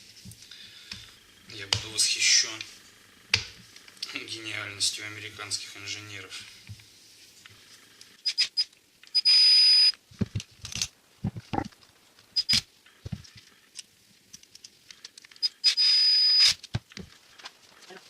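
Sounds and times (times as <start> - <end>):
metal parts clicking and knocking: 10.2 - 11.6.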